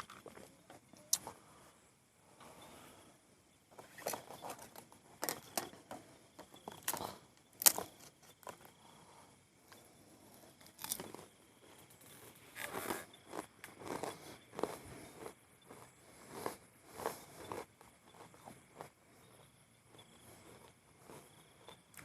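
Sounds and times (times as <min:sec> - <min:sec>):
rustling and crinkling: 0:03.7 - 0:08.8
sharp cracks: 0:06.8 - 0:08.0.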